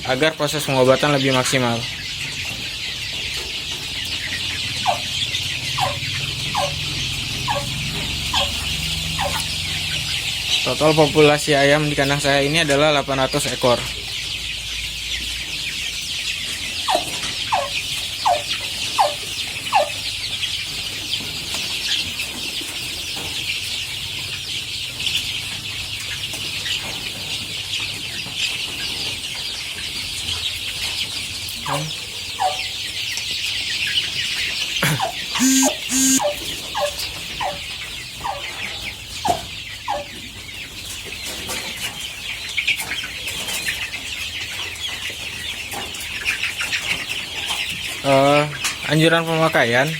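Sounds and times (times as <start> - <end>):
flock of chickens calling: 0.0 - 49.9
short chicken clucks: 5.7 - 6.8, 7.4 - 10.1, 34.8 - 37.6.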